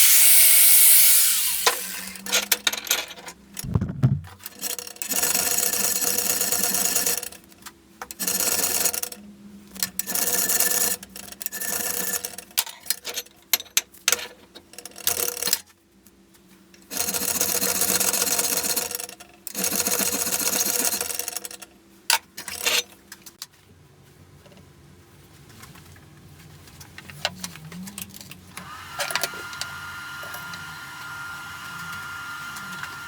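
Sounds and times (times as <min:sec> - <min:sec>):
power grinder on steel: 0:00.0 - 0:02.3, 0:29.0 - 0:33.0
sharp clicks and knocks: 0:03.6 - 0:04.4.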